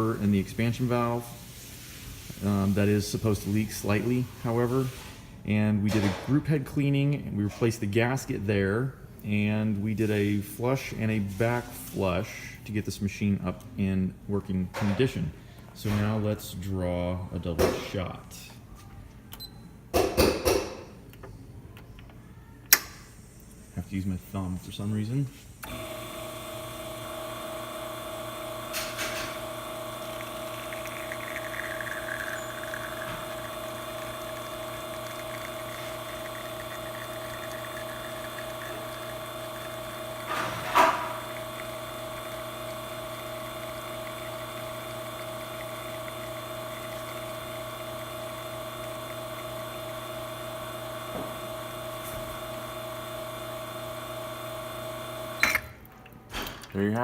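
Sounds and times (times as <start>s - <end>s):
espresso machine pump humming: 0.0s - 4.9s, 25.6s - 55.7s.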